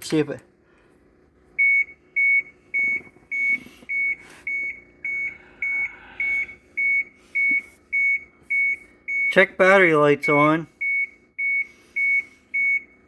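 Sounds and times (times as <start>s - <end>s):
warning buzzer beeping: 1.6s - 13.0s.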